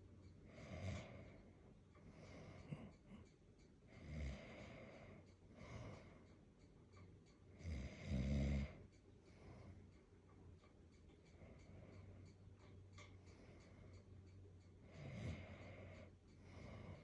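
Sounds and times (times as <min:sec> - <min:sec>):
man snoring: 0:07.6 - 0:08.8.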